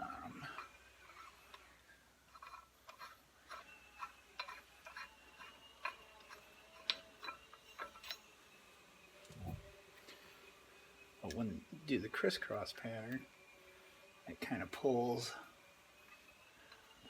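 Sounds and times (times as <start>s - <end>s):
metal lug nuts clinking: 2.3s - 8.3s.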